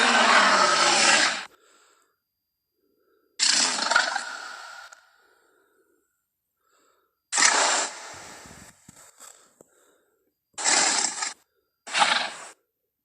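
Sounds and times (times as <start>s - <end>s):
dinosaur harsh calls: 0.0s - 1.5s, 3.4s - 5.0s, 11.9s - 12.5s.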